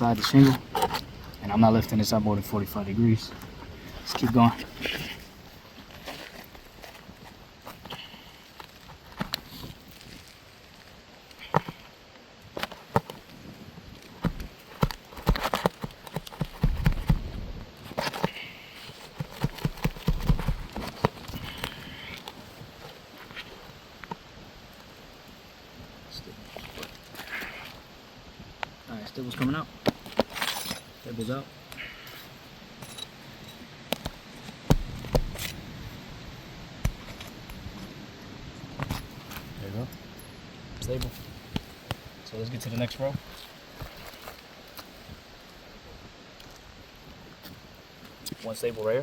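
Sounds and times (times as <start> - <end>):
shingles being handled: 14.0 - 17.2, 17.8 - 23.6, 29.3 - 35.6.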